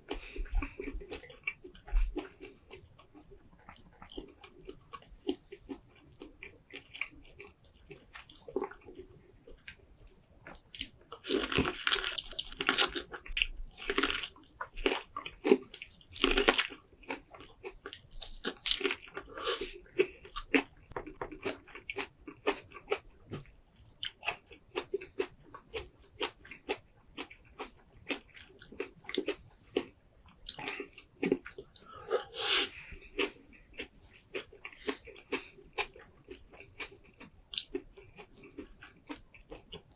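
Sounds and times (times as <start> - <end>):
wet chewing and biting: 10.4 - 39.9.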